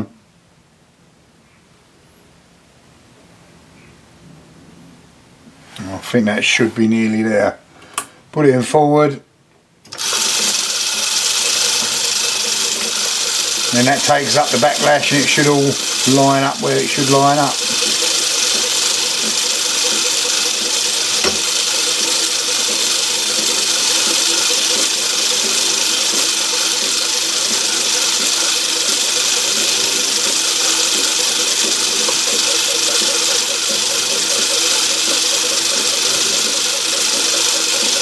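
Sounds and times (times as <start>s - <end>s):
lathe whirring and rattling: 9.9s - 38.0s.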